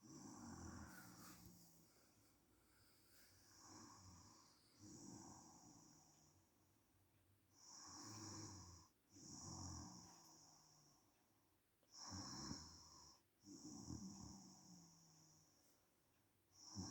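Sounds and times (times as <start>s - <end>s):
woman snoring faintly: 0.0s - 1.5s.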